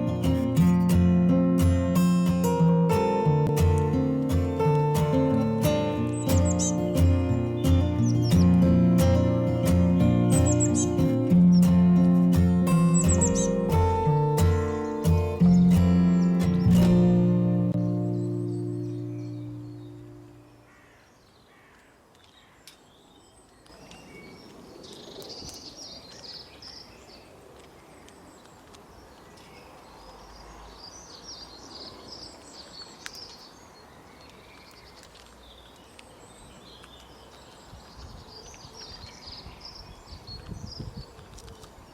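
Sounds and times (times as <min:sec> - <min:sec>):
outdoor background hiss: 0:00.0 - 0:23.5
small birds chirping: 0:00.0 - 0:41.9.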